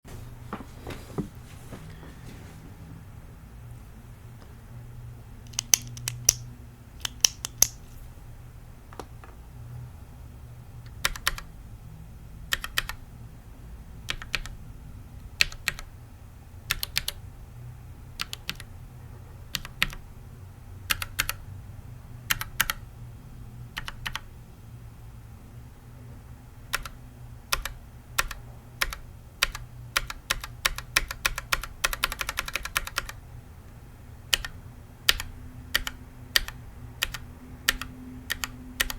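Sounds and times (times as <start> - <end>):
mechanical keyboard key clacks: 5.5 - 6.4, 7.0 - 7.8.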